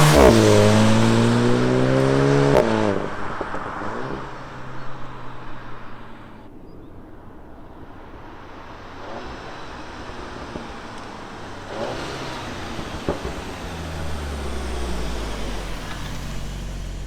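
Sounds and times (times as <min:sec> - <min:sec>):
car engine at low revs: 0:00.0 - 0:06.5, 0:07.2 - 0:17.0
exhaust crack: 0:00.0 - 0:17.0.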